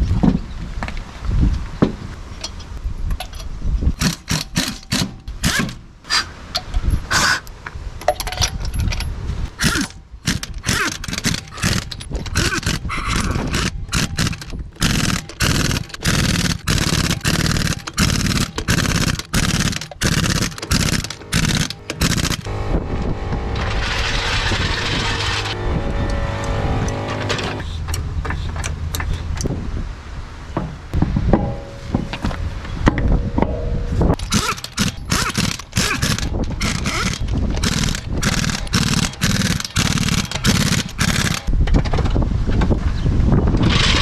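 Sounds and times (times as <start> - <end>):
impact wrench rattling: 2.1 - 5.9, 9.5 - 22.8, 27.2 - 29.6, 31.0 - 41.5
low hum: 16.2 - 41.5.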